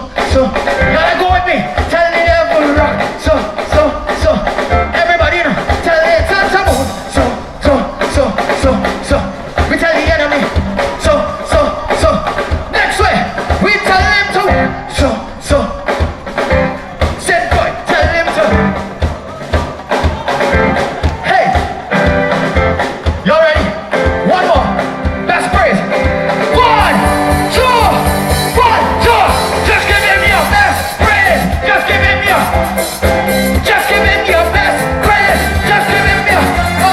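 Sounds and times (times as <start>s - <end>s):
driving drum beat: 0.0s - 36.9s
live band playing soca: 0.0s - 36.9s
person singing: 25.8s - 36.9s.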